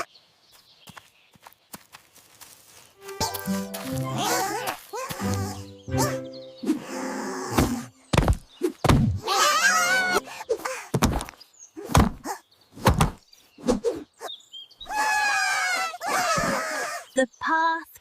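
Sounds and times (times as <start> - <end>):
high wavering cry: 3.2 - 7.9, 9.3 - 10.4
sharp thumps and knocks: 7.6 - 9.2, 10.9 - 13.2.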